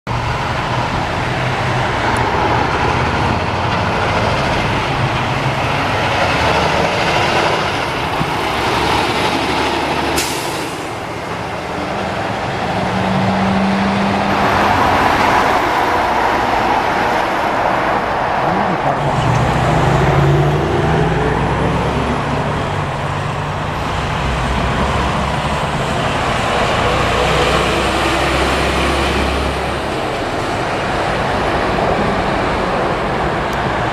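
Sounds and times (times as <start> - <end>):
diesel truck engines passing: 0.1 - 33.9
tyre and traffic noise: 0.1 - 33.9.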